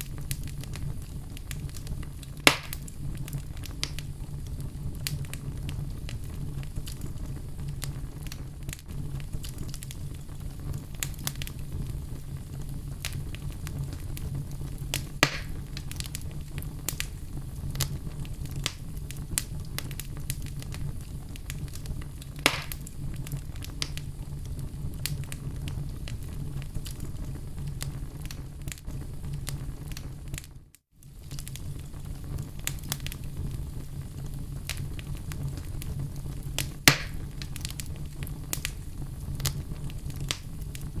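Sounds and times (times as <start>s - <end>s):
fire crackling: 0.0s - 41.0s
fire flames rumbling: 0.0s - 41.0s
wood fire pops: 0.0s - 41.0s.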